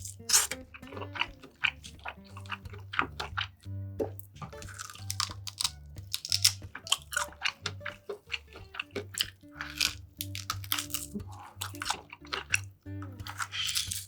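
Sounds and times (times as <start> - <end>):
soft background music: 0.0 - 14.0
wet chewing of food: 0.0 - 14.0
crunchy clicks: 4.0 - 14.0.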